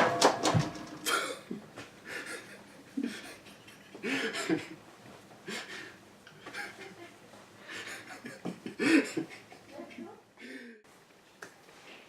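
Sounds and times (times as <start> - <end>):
person laughing breathily: 1.0 - 4.8, 5.5 - 9.8
person gasping: 10.4 - 10.8.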